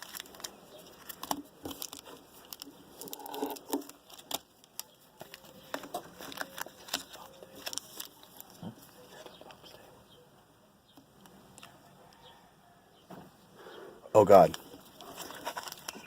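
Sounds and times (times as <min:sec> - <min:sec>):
wrappers crinkling and tearing: 0:00.0 - 0:09.7, 0:14.6 - 0:16.0.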